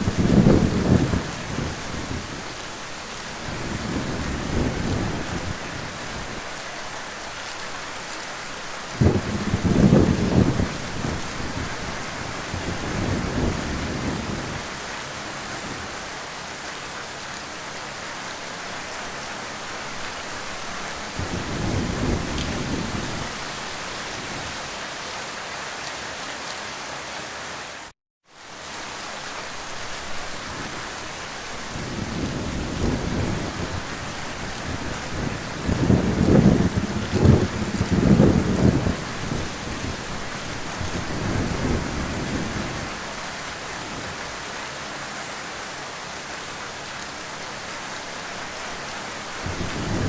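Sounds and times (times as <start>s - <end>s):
thunder rumbling: 0.0s - 2.6s, 3.3s - 6.5s, 8.9s - 14.8s, 21.1s - 24.6s, 31.6s - 43.2s, 49.4s - 50.0s
heavy rain: 0.0s - 50.0s.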